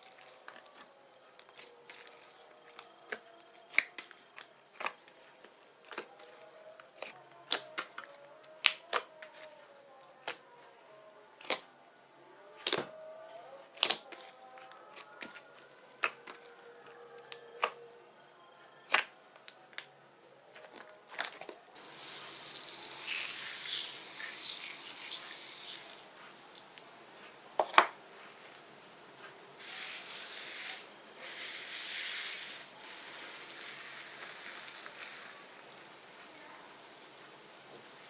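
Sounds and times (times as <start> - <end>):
slime squelching by hand: 0.0 - 10.4, 13.7 - 16.6.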